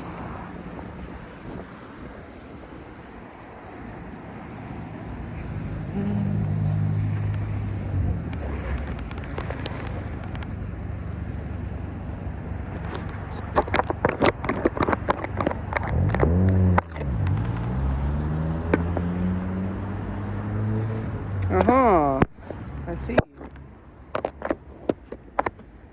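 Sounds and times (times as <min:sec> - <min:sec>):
vehicle motor humming: 0:00.0 - 0:25.9
sharp clicks and rattles: 0:06.4 - 0:10.6, 0:12.6 - 0:18.0, 0:21.4 - 0:25.9.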